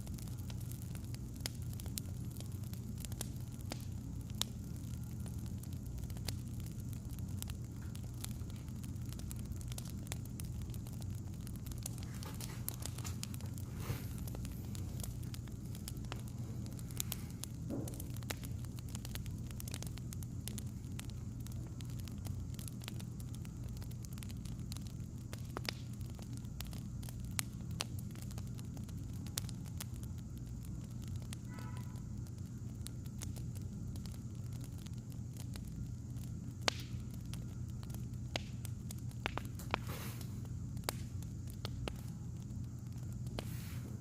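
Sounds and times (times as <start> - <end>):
low hum: 0.0 - 35.0
wood fire crackling: 0.0 - 44.0.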